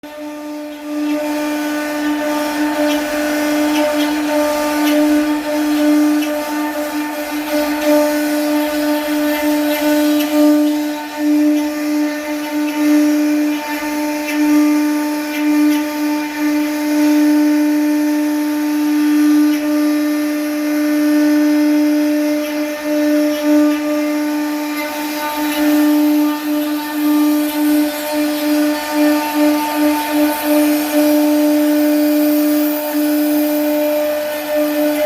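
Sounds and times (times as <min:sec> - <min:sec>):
router spindle whine: 0:00.0 - 0:35.0.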